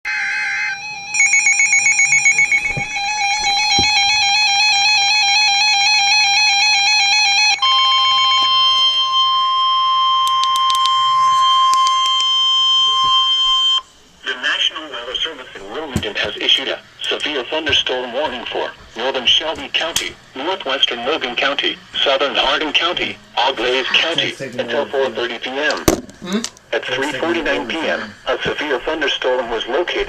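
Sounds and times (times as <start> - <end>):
warbling electronic alert tone: 0.1 - 13.8
buzzy data header: 0.1 - 15.6
steady weather radio alert tone: 0.1 - 15.8.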